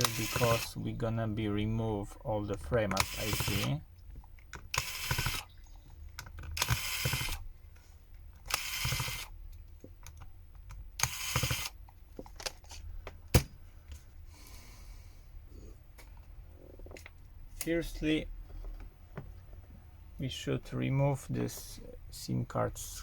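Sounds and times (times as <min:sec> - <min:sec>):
screwdriver rasping and clicking: 0:00.0 - 0:00.7, 0:02.9 - 0:03.8, 0:04.4 - 0:05.5, 0:06.2 - 0:07.4, 0:08.4 - 0:09.3, 0:10.0 - 0:12.0.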